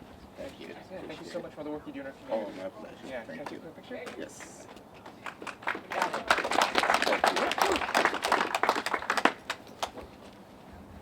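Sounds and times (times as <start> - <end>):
people applauding: 3.5 - 10.0.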